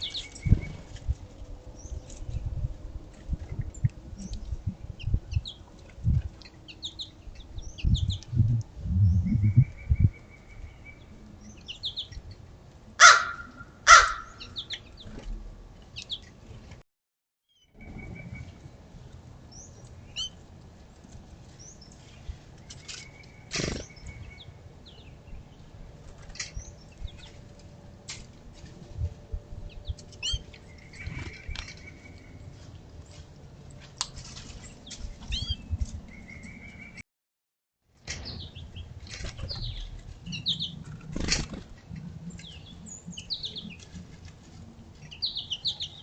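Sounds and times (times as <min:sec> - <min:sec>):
songbirds chirping: 0:00.0 - 0:16.8, 0:17.5 - 0:37.0, 0:38.1 - 0:46.0
bird wing flutters: 0:23.5 - 0:24.0, 0:40.8 - 0:41.9.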